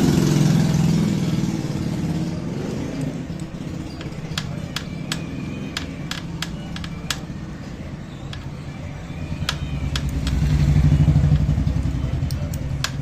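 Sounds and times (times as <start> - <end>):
vehicle engine rumbling: 0.0 - 13.0
sharp clicks: 3.0 - 7.4, 9.4 - 13.0.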